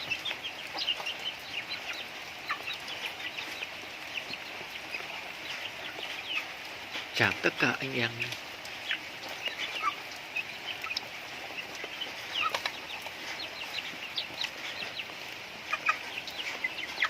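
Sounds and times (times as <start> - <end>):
chickens clucking and chirping: 0.0 - 17.0
rain hissing: 0.0 - 17.0.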